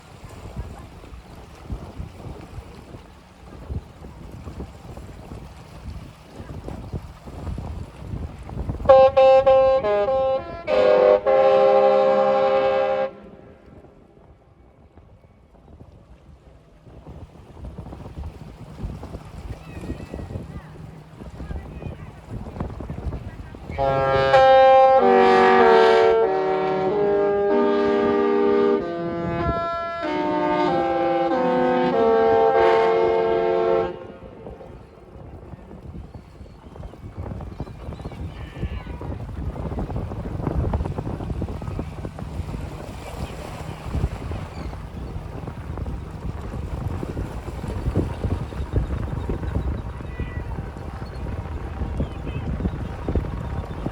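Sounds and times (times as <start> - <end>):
wind on microphone: 0.0 - 53.9
ship horn playing a tune: 8.8 - 14.2, 23.6 - 35.2.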